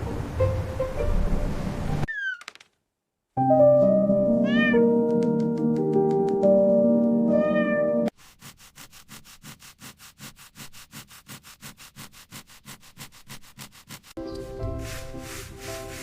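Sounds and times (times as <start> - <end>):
background music: 3.4 - 8.1, 14.2 - 16.0
cat meowing: 4.4 - 4.9, 7.3 - 8.1.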